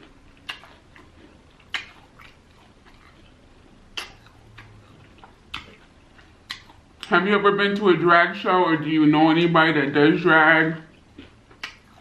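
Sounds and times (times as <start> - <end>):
chewing crispy fried chicken: 0.0 - 7.1, 10.2 - 12.0.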